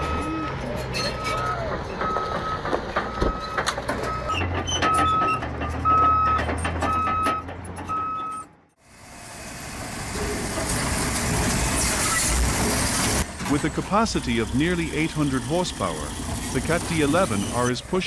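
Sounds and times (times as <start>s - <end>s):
reversing alarm beeping: 0.0s - 8.5s
diesel engine: 0.0s - 18.0s
engine and hiss: 8.8s - 17.8s.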